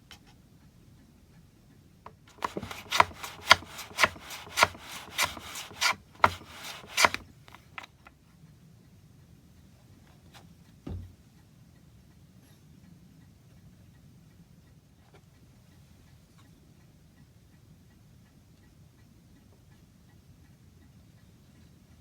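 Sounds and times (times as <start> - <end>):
hand tool rasping on wood: 2.3 - 7.8.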